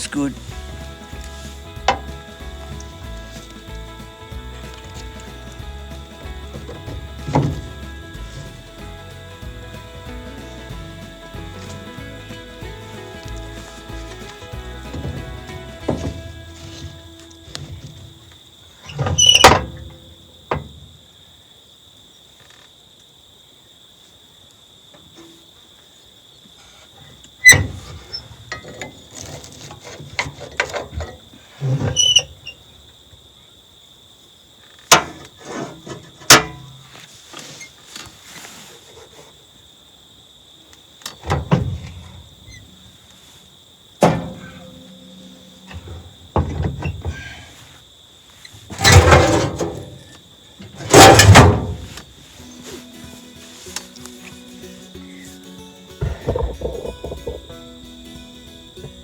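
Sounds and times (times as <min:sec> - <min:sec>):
knocks and clatters: 0:00.5 - 0:09.0, 0:12.7 - 0:18.2, 0:41.1 - 0:42.7, 0:44.0 - 0:47.4, 0:48.7 - 0:52.1, 0:56.0 - 0:57.6
squeaks: 0:18.8 - 0:19.9, 0:31.6 - 0:32.6
high-pitched insect drone: 0:52.4 - 0:59.0.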